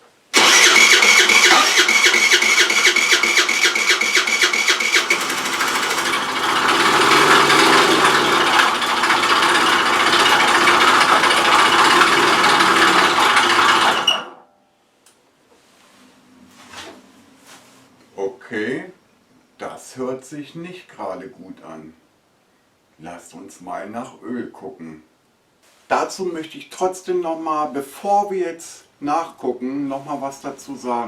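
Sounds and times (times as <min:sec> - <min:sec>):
scooter engine clattering: 0:00.4 - 0:14.3.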